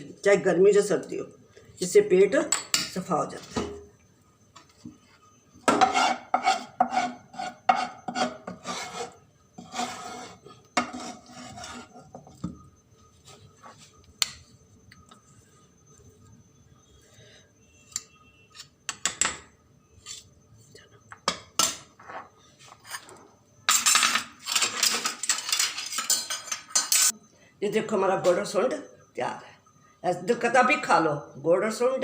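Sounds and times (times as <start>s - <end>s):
spoon scraping sticky mixture in pan: 5.8s - 12.4s.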